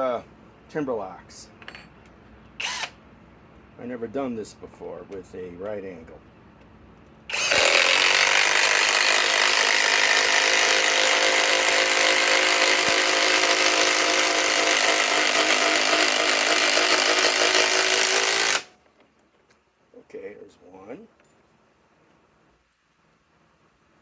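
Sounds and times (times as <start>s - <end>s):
impact wrench driving screw into wood: 2.6s - 3.0s, 7.3s - 18.7s.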